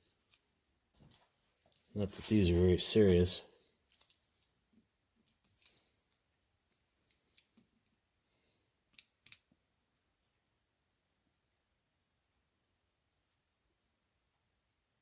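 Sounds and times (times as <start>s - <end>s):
small metal parts clicking: 5.2s - 6.2s, 8.9s - 9.4s.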